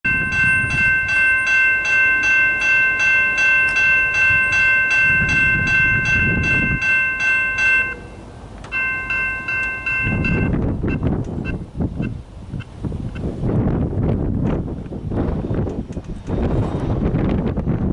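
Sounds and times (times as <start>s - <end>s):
crossing bell dinging: 0.0s - 11.1s
low rumble of passing train: 0.1s - 17.9s
locomotive horn blast: 2.0s - 11.6s.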